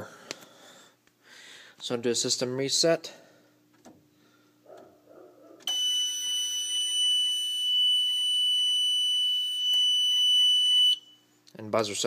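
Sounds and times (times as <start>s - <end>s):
high-pitched alarm buzzer tone: 5.7s - 11.3s.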